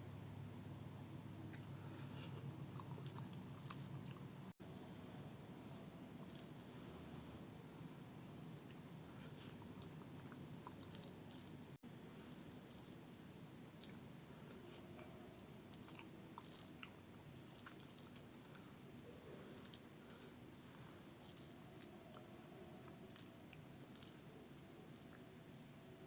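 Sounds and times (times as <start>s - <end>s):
low room hum: 0.0s - 26.0s
person chewing: 1.5s - 4.3s, 5.7s - 7.0s, 8.0s - 13.1s, 13.8s - 20.4s, 21.1s - 25.2s.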